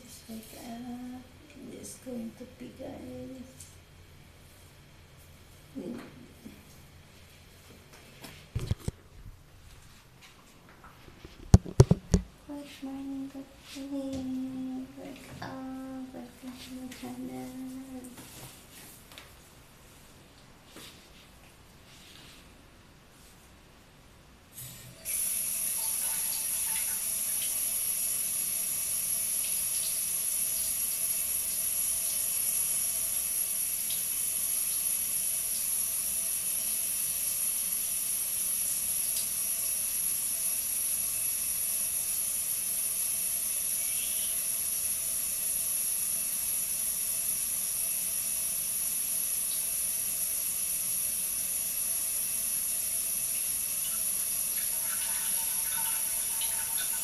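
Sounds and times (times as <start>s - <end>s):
water running from a tap: 25.0s - 57.0s.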